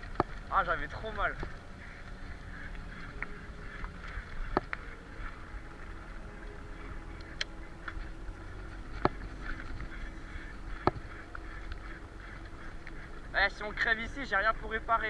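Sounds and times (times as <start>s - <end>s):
bike clicks and knocks: 0.0s - 0.5s, 3.0s - 4.8s, 8.9s - 10.0s, 10.7s - 11.8s
bicycle rolling on rough track: 0.0s - 15.0s
wind rumbling on microphone: 0.0s - 15.0s.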